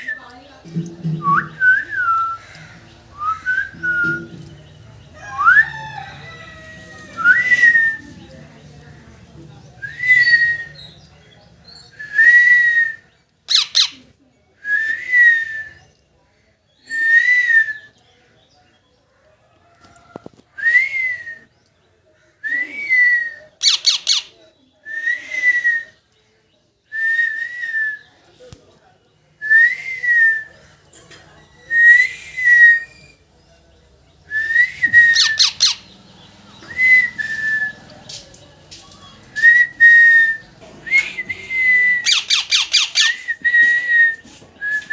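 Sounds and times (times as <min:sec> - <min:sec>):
parrot squawking: 0:13.5 - 0:14.0, 0:23.6 - 0:24.3, 0:35.1 - 0:36.0, 0:42.0 - 0:43.2
parrot whistling: 0:13.5 - 0:14.0, 0:23.6 - 0:24.3, 0:34.9 - 0:36.0, 0:41.0 - 0:43.4.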